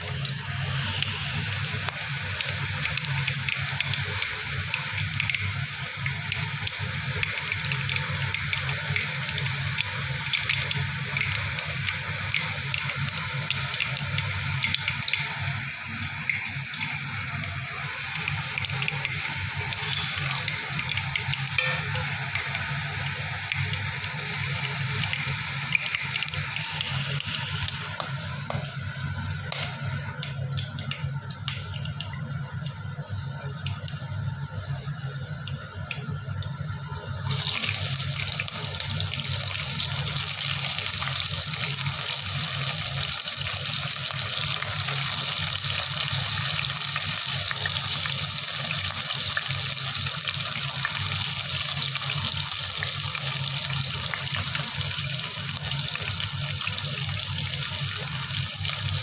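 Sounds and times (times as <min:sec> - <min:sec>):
water running from a tap: 0:00.0 - 0:34.3, 0:37.3 - 0:59.0.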